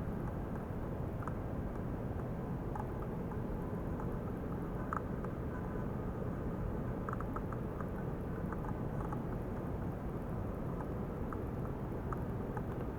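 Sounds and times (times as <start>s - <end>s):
light ticks: 4.0s - 5.4s, 10.7s - 12.9s.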